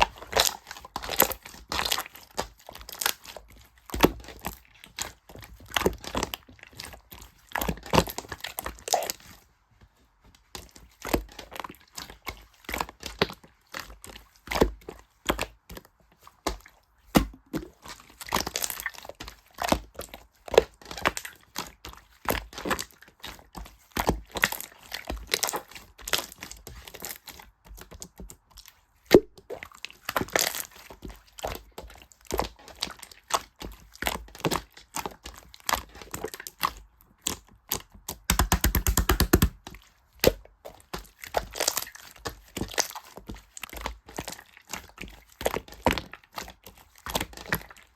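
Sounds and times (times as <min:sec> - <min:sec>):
material crinkling and clicking: 0:35.8 - 0:39.9.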